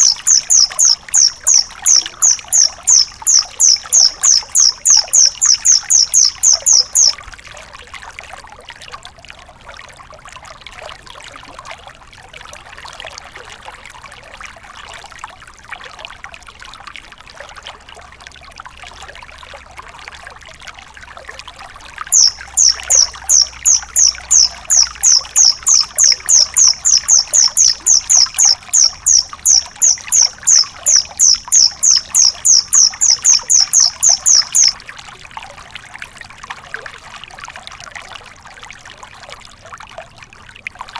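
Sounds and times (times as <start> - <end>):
cricket chirping: 0.0 - 7.2, 22.1 - 34.8
background hiss: 22.2 - 34.8.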